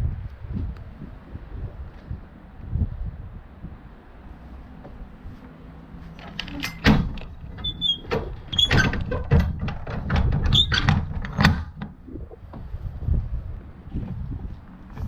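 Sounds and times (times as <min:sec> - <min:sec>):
knocks and clunks: 0:06.1 - 0:12.8
short squeaks: 0:07.5 - 0:09.0, 0:10.4 - 0:11.4.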